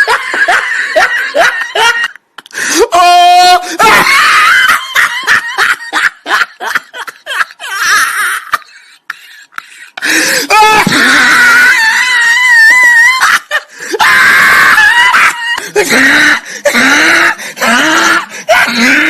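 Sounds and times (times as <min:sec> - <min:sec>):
people laughing: 0:00.0 - 0:02.2, 0:03.8 - 0:10.2.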